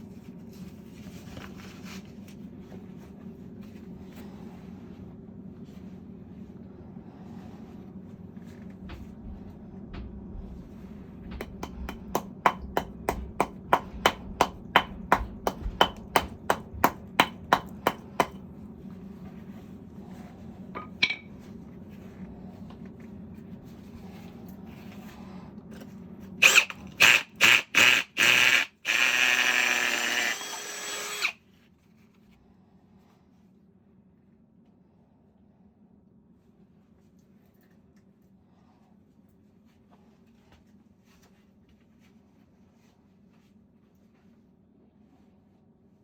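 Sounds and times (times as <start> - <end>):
hammer drill running: 26.4 - 31.4.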